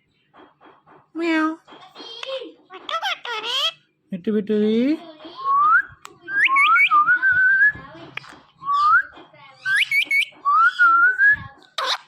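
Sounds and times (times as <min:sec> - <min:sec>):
parrot whistling: 0:05.4 - 0:07.8, 0:08.7 - 0:12.0.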